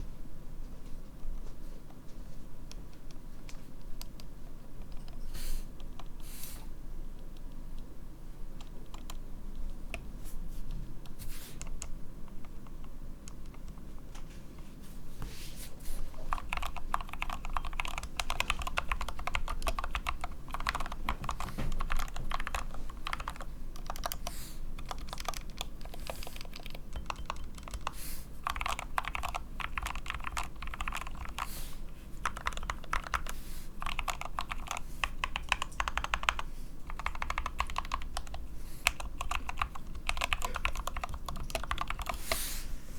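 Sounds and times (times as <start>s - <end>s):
keyboard typing: 2.7s - 6.1s, 8.6s - 10.0s, 16.2s - 31.6s, 32.2s - 42.4s.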